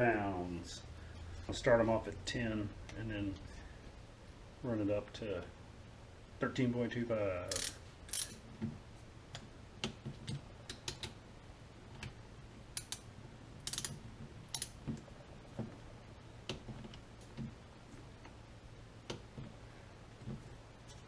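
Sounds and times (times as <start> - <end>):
torque wrench clicks: 7.5 - 8.4, 12.8 - 14.8
wrench ratcheting: 7.5 - 8.4, 12.8 - 14.8.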